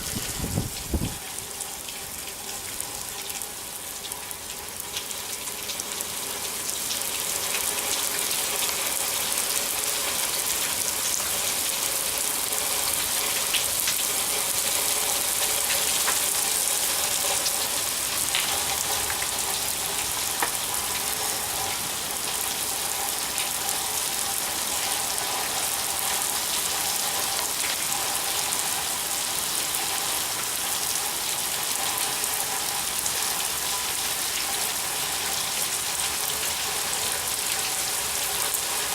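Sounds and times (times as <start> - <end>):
rain pattering on surfaces: 0.0 - 38.9.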